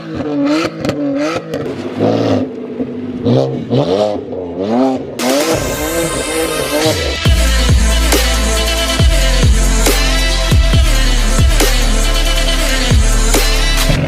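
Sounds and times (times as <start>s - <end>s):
car engine revving: 0.0s - 14.0s
music: 5.2s - 14.0s.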